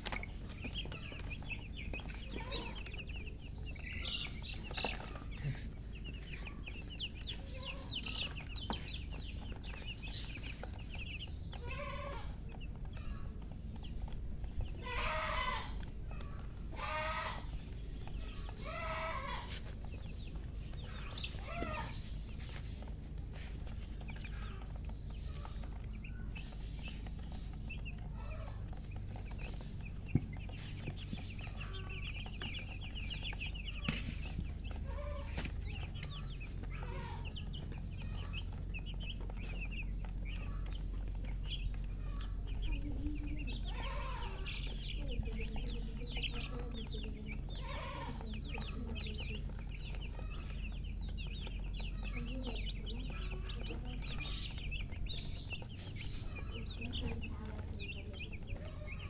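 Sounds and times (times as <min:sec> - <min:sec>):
baby chicks peeping: 0:00.0 - 0:59.0
chicken clucks: 0:00.0 - 0:59.0.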